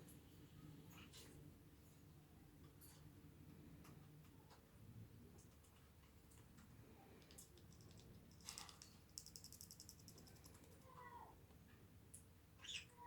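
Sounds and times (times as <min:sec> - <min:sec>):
high parrot clicks: 0:07.2 - 0:10.8.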